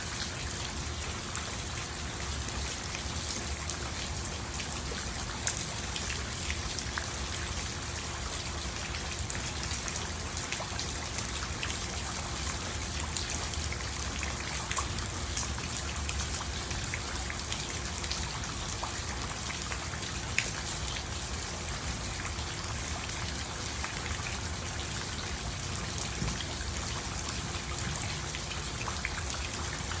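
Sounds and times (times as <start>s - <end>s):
raindrops ticking on surfaces: 0.0s - 30.0s
steady rain hiss: 0.0s - 30.0s.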